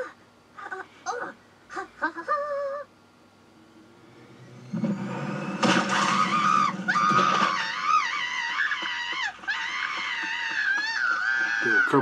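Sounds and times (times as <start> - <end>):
crash: 4.6 - 8.2.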